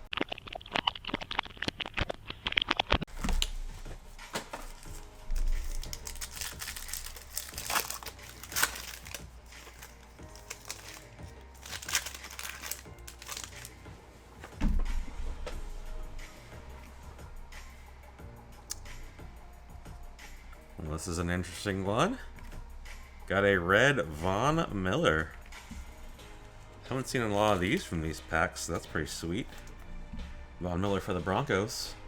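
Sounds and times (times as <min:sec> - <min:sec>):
plastic wrapping crinkling and tearing: 0:00.1 - 0:13.8
background music: 0:03.1 - 0:32.0.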